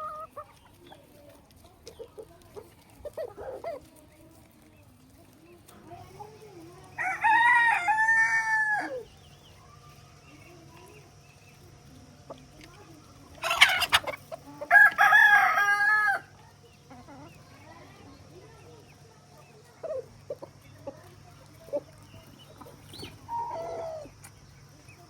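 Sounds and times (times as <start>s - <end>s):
rooster crowing: 7.0s - 9.0s, 14.7s - 16.3s
soft clucking: 10.0s - 15.4s, 16.3s - 25.0s.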